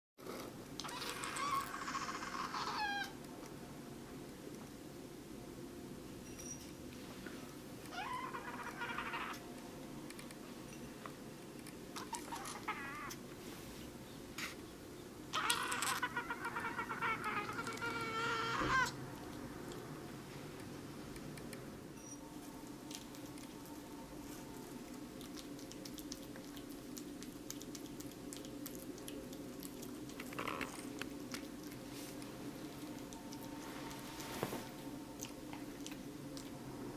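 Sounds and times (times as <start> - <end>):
kitten mewing: 0.8 - 3.2, 7.9 - 9.4, 12.0 - 13.2, 15.3 - 19.0
kitten chewing watermelon: 15.4 - 20.8, 22.6 - 36.9.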